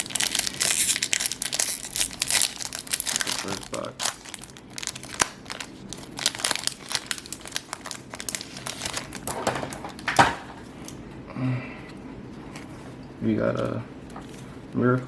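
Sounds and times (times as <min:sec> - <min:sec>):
foil wrapper crinkling and tearing: 0:00.0 - 0:11.0.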